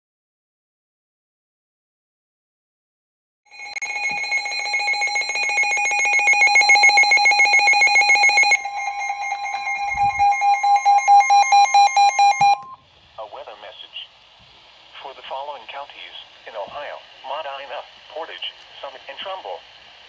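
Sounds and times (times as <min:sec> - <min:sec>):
electronic alarm beeping: 0:03.5 - 0:12.8
steady high warning tone: 0:03.5 - 0:13.6.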